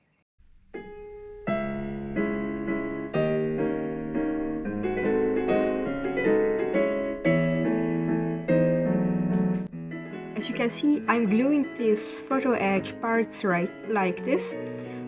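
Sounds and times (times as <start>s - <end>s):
piano music: 0.4s - 15.0s.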